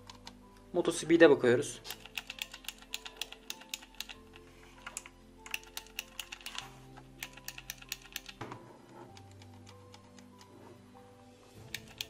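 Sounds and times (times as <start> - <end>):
mechanical keyboard clicking: 1.8 - 8.4, 11.6 - 12.0.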